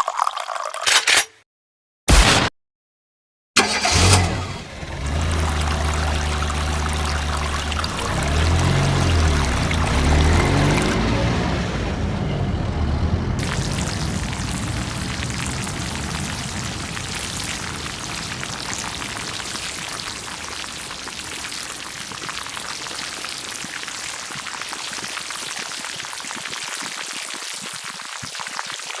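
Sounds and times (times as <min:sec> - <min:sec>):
crackling sizzle: 0:13.4 - 0:29.0.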